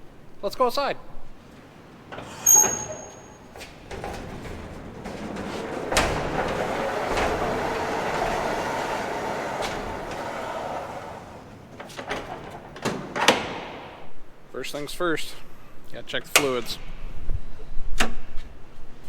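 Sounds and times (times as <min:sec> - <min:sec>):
shed door rolling rattle: 0:01.3 - 0:14.2
door latch click: 0:11.8 - 0:14.0.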